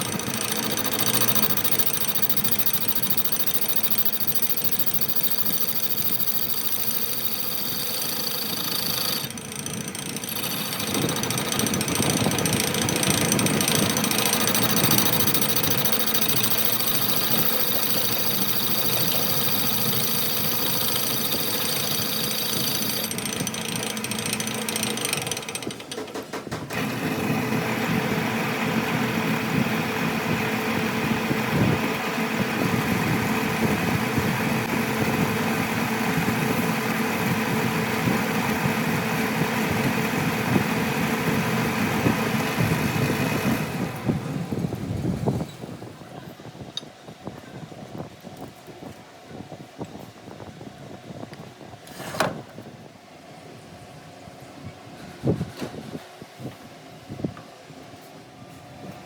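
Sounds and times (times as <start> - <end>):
steady machine noise: 0.0 - 25.9, 26.7 - 45.4
machine shop machinery running: 0.0 - 45.5.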